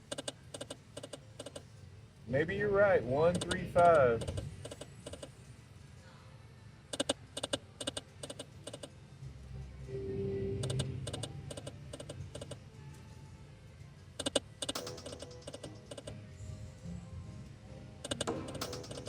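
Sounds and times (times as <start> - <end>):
low casino hum: 0.0 - 19.0
slot machine reel clicks: 14.2 - 16.1, 18.1 - 19.0.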